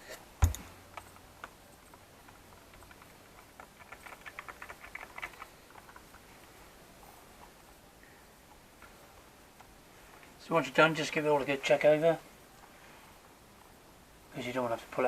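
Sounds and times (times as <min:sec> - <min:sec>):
light clicks of small plastic parts: 0:00.4 - 0:06.6.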